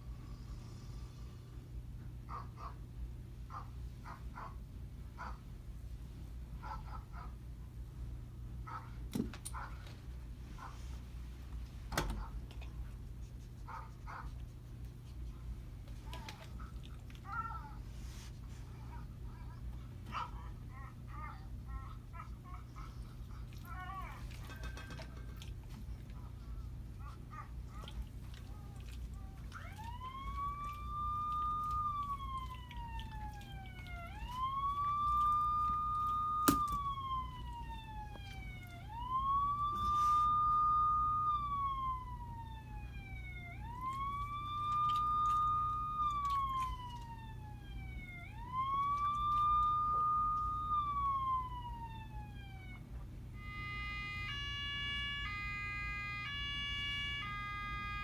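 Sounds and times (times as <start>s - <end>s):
siren wailing: 23.7s - 58.0s.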